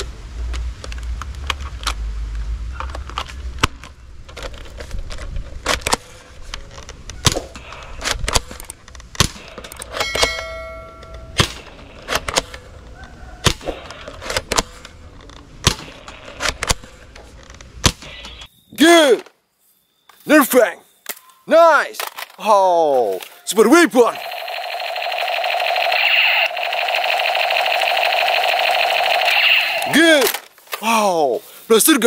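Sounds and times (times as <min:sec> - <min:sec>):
brief tone: 0:18.1 - 0:18.8, 0:19.6 - 0:20.2, 0:20.8 - 0:21.5
toy blaster clicks and clacks: 0:24.0 - 0:30.4.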